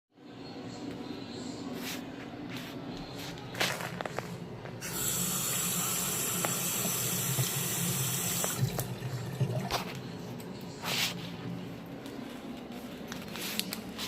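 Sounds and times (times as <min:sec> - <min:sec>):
toilet flushing: 0:04.8 - 0:10.0.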